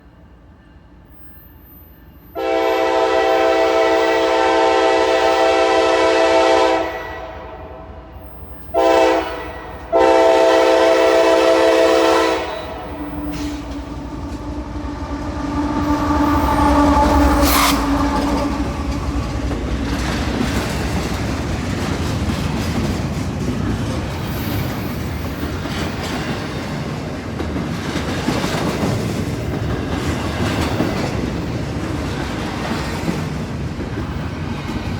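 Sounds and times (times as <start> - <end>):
train wheels on rails: 0.0 - 34.9
locomotive air horn blasts: 2.4 - 7.9, 8.7 - 19.4
diesel locomotive rumble: 2.4 - 34.9.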